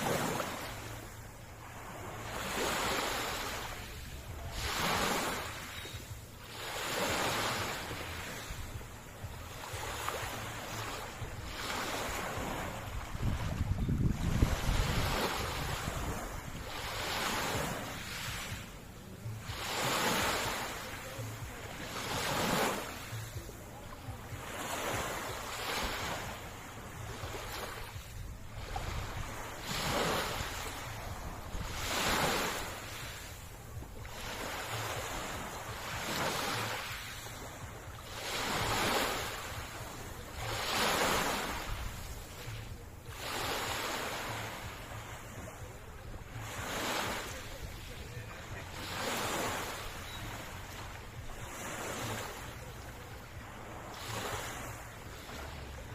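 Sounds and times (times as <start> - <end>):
sea waves washing onto shore: 0.0 - 55.9
wind rumble on microphone: 7.9 - 19.8, 26.0 - 43.5.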